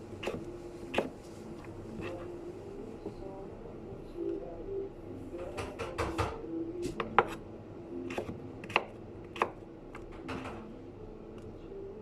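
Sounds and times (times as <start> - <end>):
knife cutting on a cutting board: 0.2 - 1.2.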